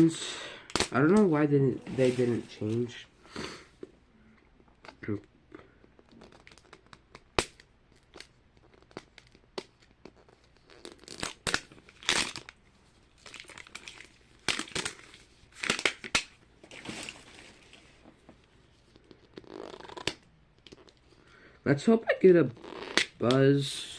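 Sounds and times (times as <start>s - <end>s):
plastic wrapping crinkling and tearing: 6.0s - 18.2s.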